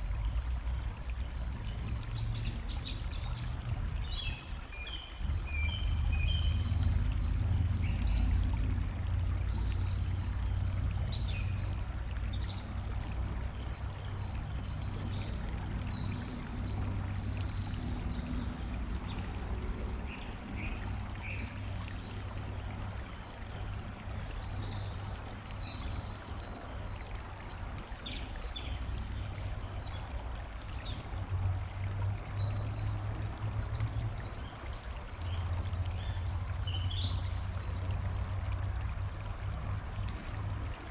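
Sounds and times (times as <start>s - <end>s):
trickling water: 0.0s - 40.9s
small birds chirping: 39.2s - 40.9s.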